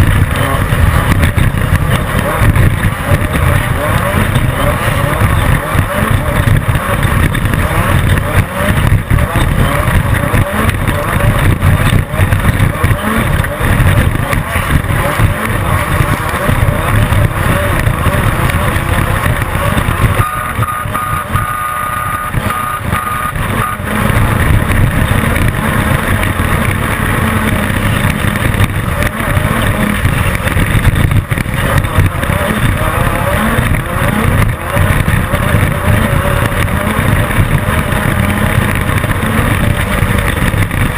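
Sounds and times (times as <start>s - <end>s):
race car engine under load: 0.0s - 40.9s
steady high tone: 20.1s - 24.0s.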